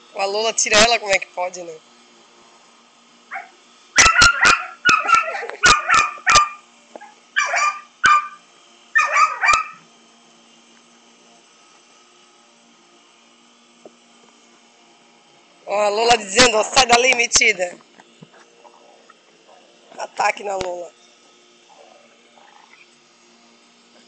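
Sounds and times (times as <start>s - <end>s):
dog barking: 3.3s - 6.6s, 7.4s - 8.4s, 9.0s - 9.8s.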